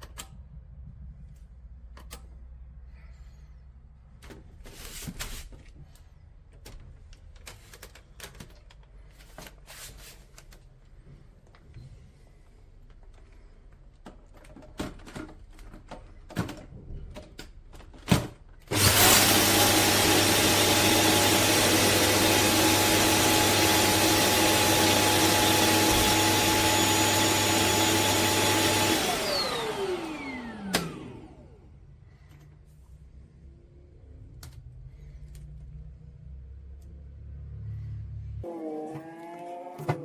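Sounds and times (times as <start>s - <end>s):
vacuum cleaner motor whining: 18.7s - 31.7s, 38.4s - 40.0s.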